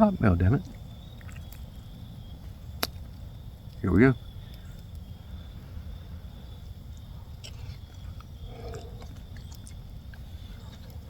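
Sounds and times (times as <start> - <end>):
person chewing pasta: 7.0 - 11.0.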